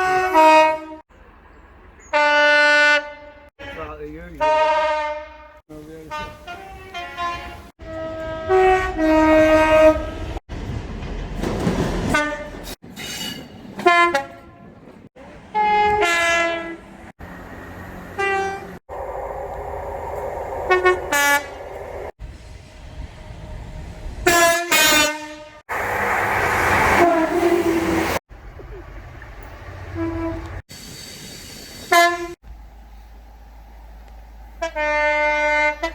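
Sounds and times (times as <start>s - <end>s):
train horns: 0.0s - 1.0s, 2.1s - 10.4s, 12.0s - 12.8s, 13.8s - 17.1s, 18.1s - 18.8s, 20.6s - 25.8s, 26.6s - 28.2s, 29.8s - 30.6s, 31.9s - 32.4s, 34.6s - 35.9s
rumble of passing trains: 0.0s - 35.9s.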